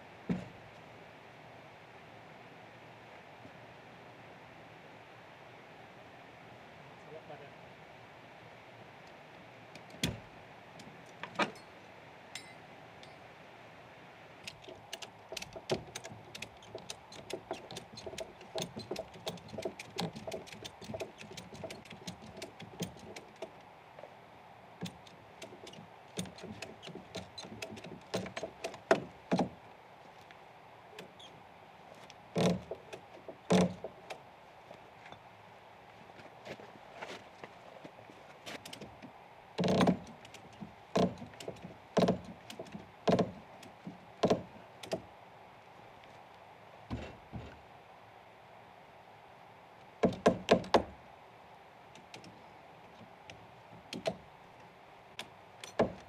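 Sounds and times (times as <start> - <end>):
heavy thuds: 46.9 - 47.6.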